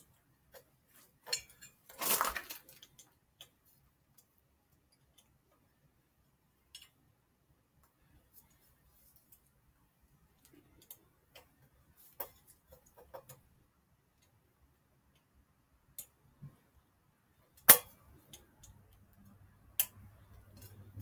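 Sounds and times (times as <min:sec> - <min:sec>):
sharp loud metal click: 0:17.7 - 0:18.0.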